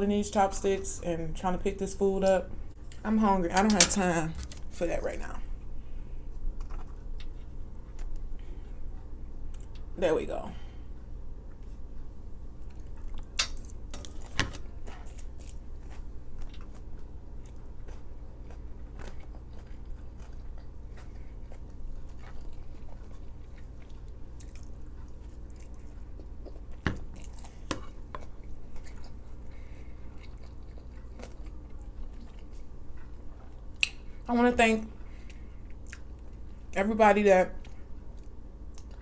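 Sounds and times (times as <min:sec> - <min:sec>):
low room hum: 0:00.0 - 0:39.0
chewing and biting food: 0:12.5 - 0:34.1, 0:37.6 - 0:39.0.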